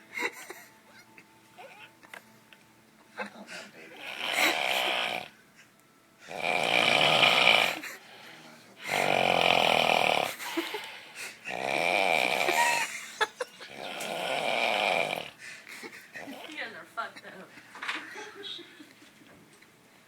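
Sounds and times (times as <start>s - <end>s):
rattly snoring: 4.0s - 5.3s, 6.3s - 7.8s, 8.8s - 10.4s, 11.5s - 12.8s, 13.7s - 15.4s.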